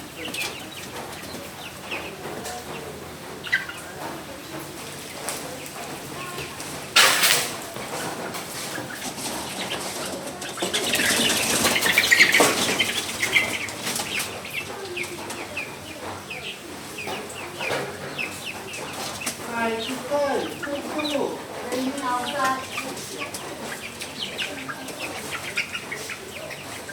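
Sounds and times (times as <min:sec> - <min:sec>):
chickens clucking: 0:00.0 - 0:26.9
chickens squawking: 0:00.0 - 0:26.9
chickens wings flapping: 0:00.0 - 0:26.9.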